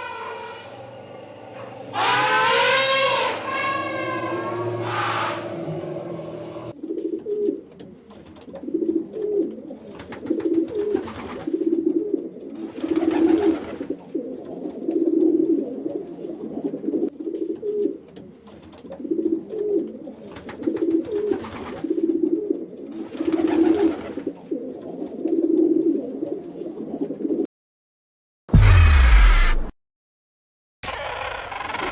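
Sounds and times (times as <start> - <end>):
bird cooing: 3.2 - 27.5.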